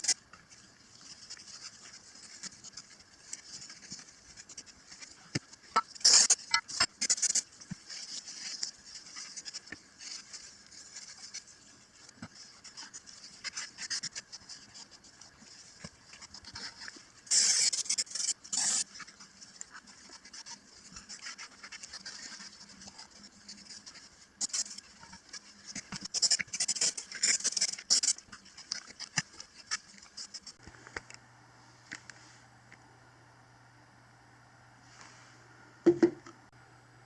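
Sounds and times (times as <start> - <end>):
dry scratching and rustling: 0.0 - 30.6
steady low hum: 30.0 - 37.0.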